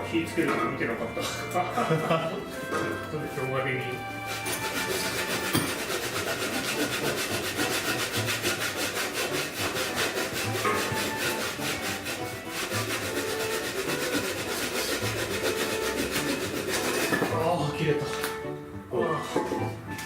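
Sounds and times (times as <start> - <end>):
hand saw cutting wood: 4.1 - 18.4.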